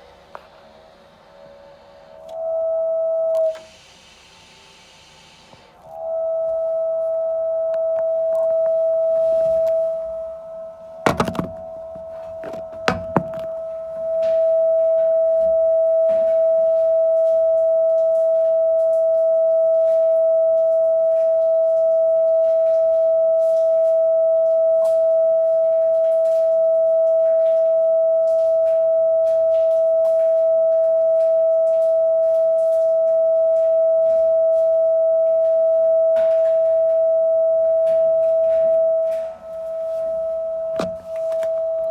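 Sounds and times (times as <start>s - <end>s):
high-pitched electrical tone: 0.0s - 41.9s
sharp knocks: 11.1s - 11.7s, 12.4s - 13.5s.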